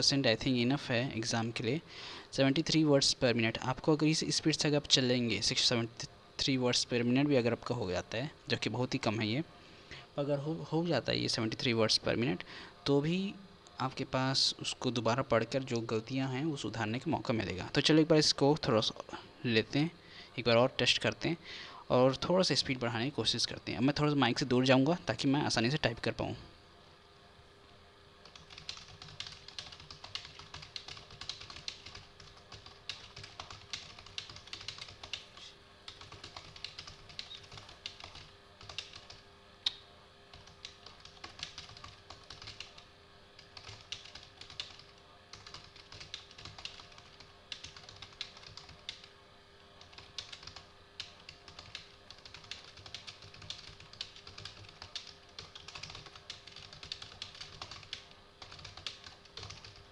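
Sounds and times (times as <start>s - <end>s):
fast keyboard typing: 28.2s - 39.3s, 40.3s - 49.1s, 49.8s - 59.9s.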